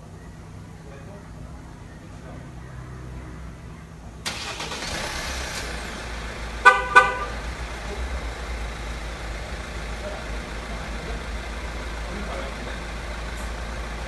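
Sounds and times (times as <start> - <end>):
car engine starting and running: 4.2 - 14.0
car horn chirps: 6.6 - 7.4.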